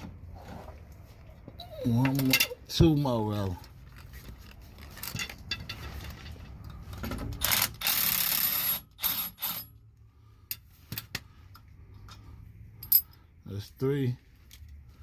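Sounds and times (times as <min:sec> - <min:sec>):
ratchet wrench clicking: 0:07.4 - 0:09.7.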